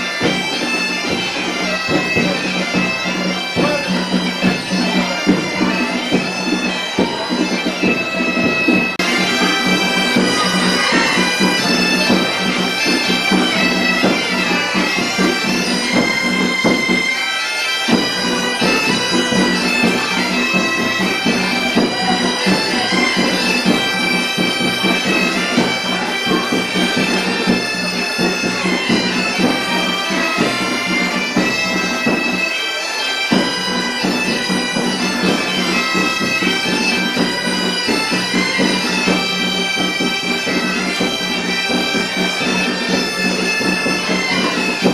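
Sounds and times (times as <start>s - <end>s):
bagpipe drone: 0.0s - 44.9s
bagpipe melody: 0.0s - 44.9s.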